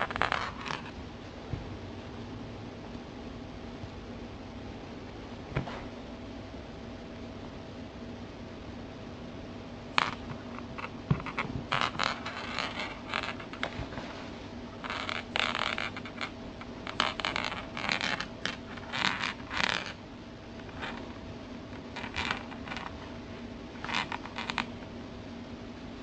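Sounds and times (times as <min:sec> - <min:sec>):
scraping and scratching: 0:00.0 - 0:01.0, 0:10.0 - 0:20.0, 0:20.6 - 0:24.9
faint steady hum: 0:00.0 - 0:26.0.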